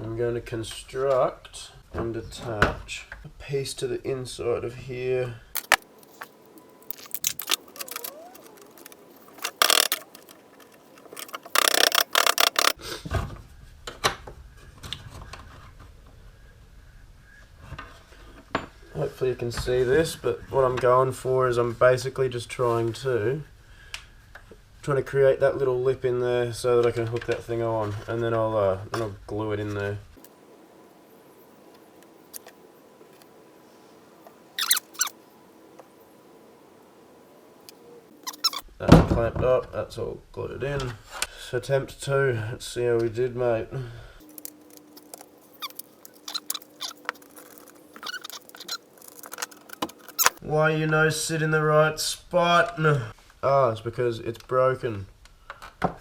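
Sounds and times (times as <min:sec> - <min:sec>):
clicks and knocks of plastic parts: 0:05.6 - 0:12.8, 0:44.2 - 0:50.4
high squeaks: 0:05.6 - 0:12.8, 0:34.6 - 0:35.2, 0:38.1 - 0:38.7, 0:44.2 - 0:50.4
short rasping bursts: 0:07.4 - 0:12.8.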